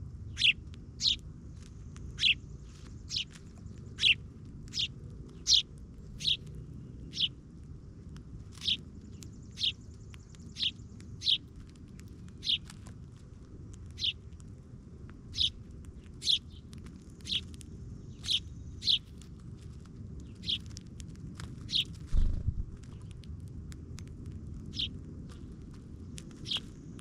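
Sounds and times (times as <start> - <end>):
small bird chirping: 0.0 - 23.2, 24.5 - 27.0
low steady rumble: 0.0 - 27.0
brief low thump: 22.1 - 22.8.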